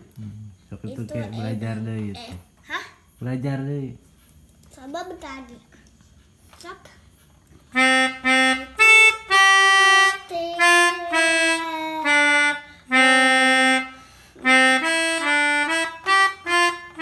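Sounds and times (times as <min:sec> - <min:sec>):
melodica playing slow tune: 0:07.7 - 0:17.0.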